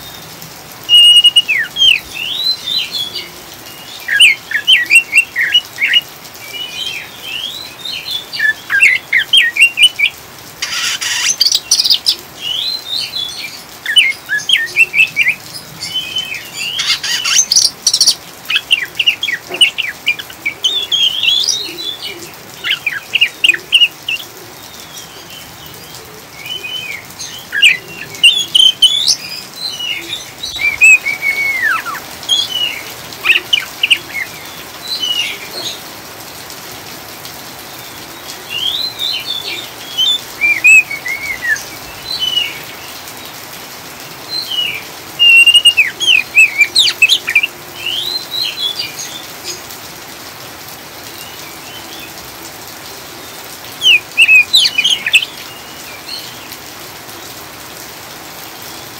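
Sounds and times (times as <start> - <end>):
rain hiss: 0.0 - 58.9
songbird chattering song: 0.9 - 24.2, 26.4 - 35.8, 38.6 - 43.0, 44.4 - 49.6, 53.7 - 56.5.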